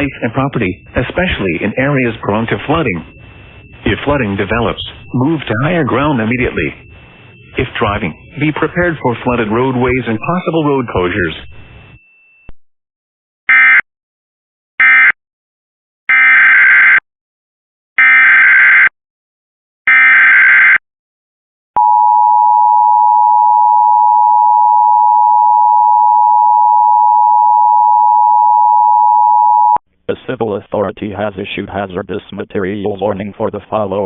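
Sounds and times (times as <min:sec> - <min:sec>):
digital data bursts: 0:00.0 - 0:12.0
screeching data bursts: 0:00.0 - 0:12.0
steady attention tone: 0:00.0 - 0:12.6, 0:21.8 - 0:29.8.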